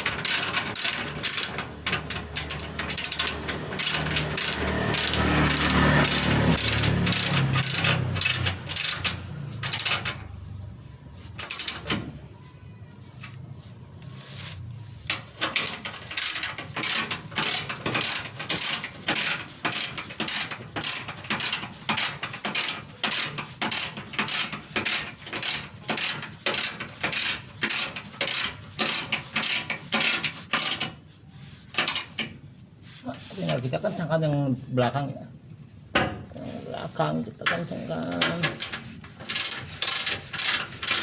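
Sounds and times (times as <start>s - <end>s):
ratchet wrench clicking: 0.0s - 10.3s, 11.4s - 12.0s, 15.1s - 31.0s, 31.7s - 32.3s, 38.1s - 41.0s.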